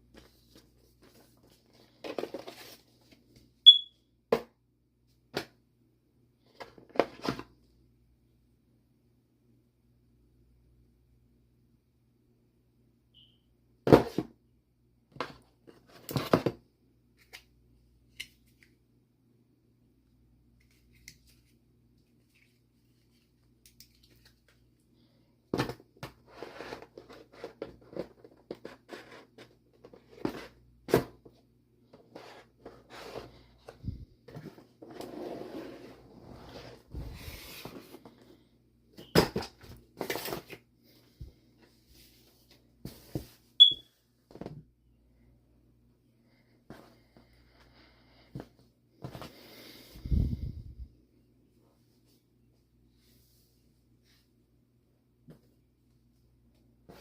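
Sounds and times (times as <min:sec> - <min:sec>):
packaging rustling and scraping: 0:00.1 - 0:03.2, 0:39.4 - 0:40.6.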